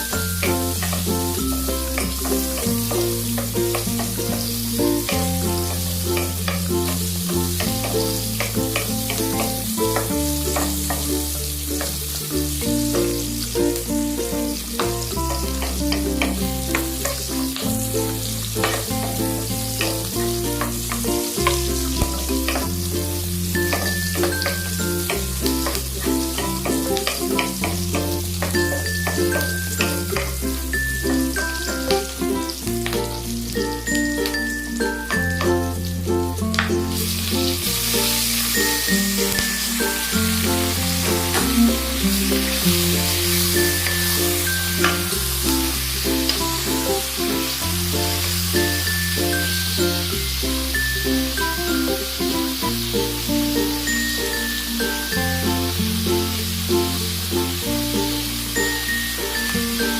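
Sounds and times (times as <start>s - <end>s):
background music: 0.0s - 59.9s
food sizzling in a pan: 0.0s - 59.9s
stirring scrapes and taps: 18.6s - 19.2s.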